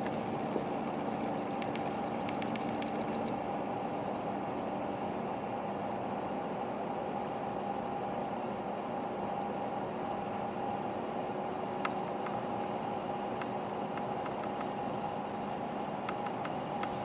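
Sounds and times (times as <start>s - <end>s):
electrical hum: 0.0s - 17.0s
power supply fan whir: 0.0s - 17.0s
faint clicks: 1.5s - 3.4s, 13.4s - 15.1s, 16.0s - 17.0s.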